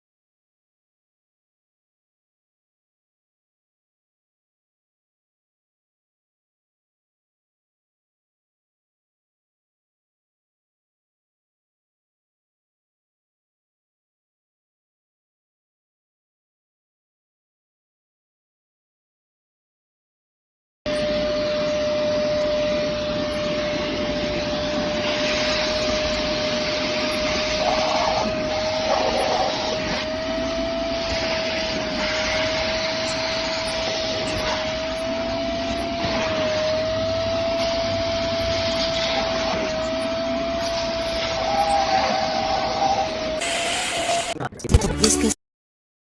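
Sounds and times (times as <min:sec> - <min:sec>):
spot cleaner motor whine: 0:20.9 - 0:44.4.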